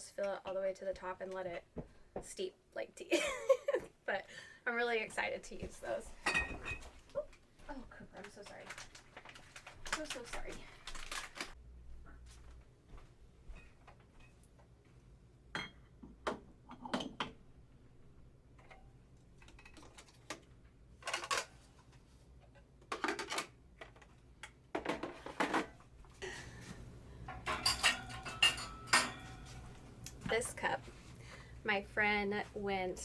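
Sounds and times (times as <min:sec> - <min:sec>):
dishes clinking and knocking: 0:06.2 - 0:07.0, 0:15.5 - 0:17.4, 0:27.2 - 0:29.9.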